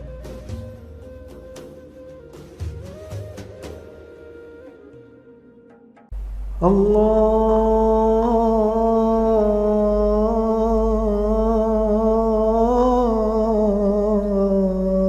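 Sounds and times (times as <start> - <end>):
steady low drone: 6.1 - 15.0
man humming a held note: 6.4 - 15.0.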